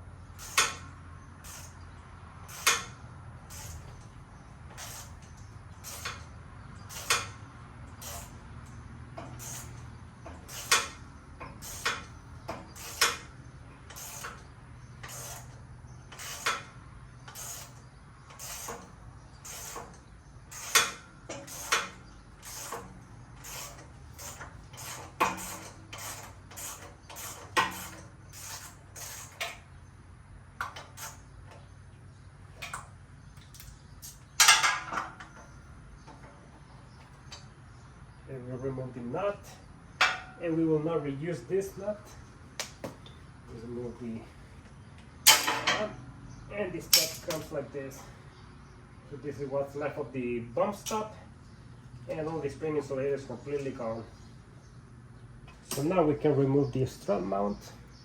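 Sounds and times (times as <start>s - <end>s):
metallic clicks of hand tools: 46.9s - 47.6s.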